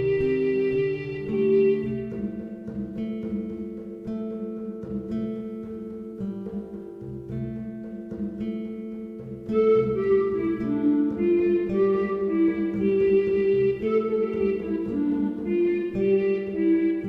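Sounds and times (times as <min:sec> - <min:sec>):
plucked string instrumental music: 0:00.0 - 0:17.0.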